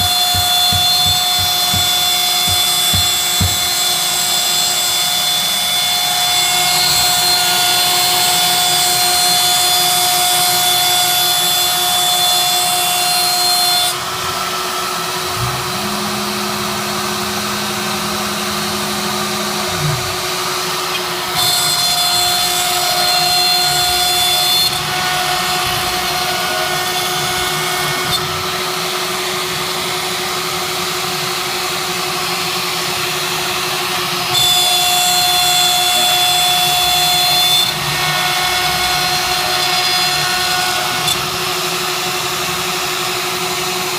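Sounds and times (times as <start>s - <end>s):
machine high whine: 13.9s - 43.9s
low motor tone: 15.3s - 20.6s.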